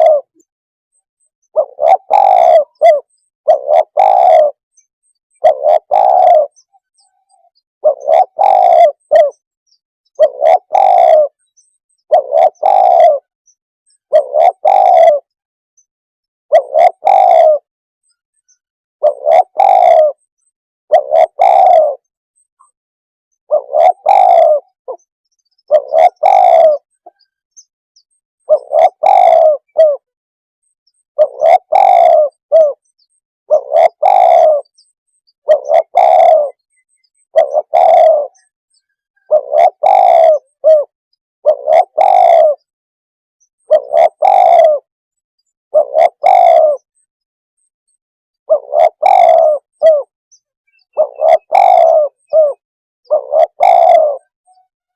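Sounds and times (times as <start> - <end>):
dove cooing: 0.0 - 0.5, 1.5 - 4.6, 5.3 - 9.4, 10.2 - 13.3, 14.1 - 15.4, 16.5 - 17.7, 19.0 - 20.3, 20.9 - 22.1, 23.5 - 27.3, 28.4 - 30.1, 31.2 - 32.9, 33.5 - 42.7, 43.6 - 44.9, 45.7 - 47.0, 47.9 - 50.1, 50.8 - 54.9.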